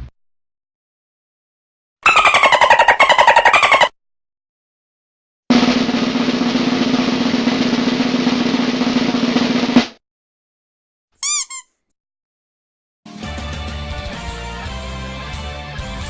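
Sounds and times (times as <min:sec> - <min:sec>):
snare drum roll: 0:05.5 - 0:10.0
short high-pitched chirps: 0:11.2 - 0:11.7.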